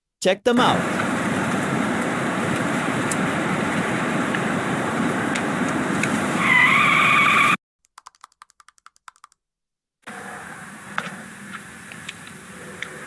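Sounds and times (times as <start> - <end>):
rising squeal: 6.2 - 7.6.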